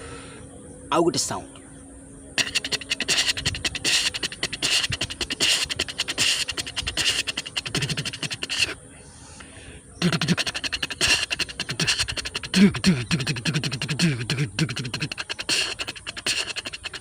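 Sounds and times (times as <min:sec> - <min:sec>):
low hum: 0:00.0 - 0:17.0
man beatboxing: 0:02.4 - 0:08.8, 0:10.0 - 0:17.0.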